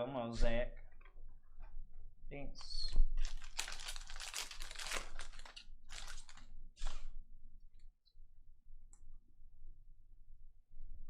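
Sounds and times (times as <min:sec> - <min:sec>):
plastic wrapper tearing and crinkling: 0:03.1 - 0:07.1.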